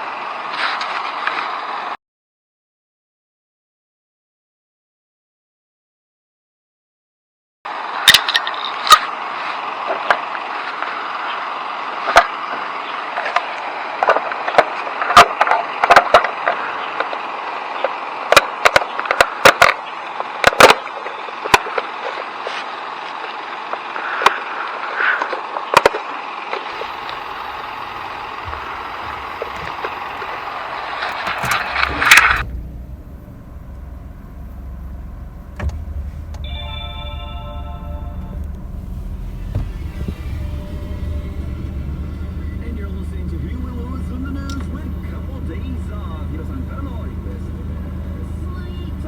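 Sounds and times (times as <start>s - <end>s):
steady hiss: 26.8s - 31.9s
sharp clicks and knocks: 26.8s - 36.6s.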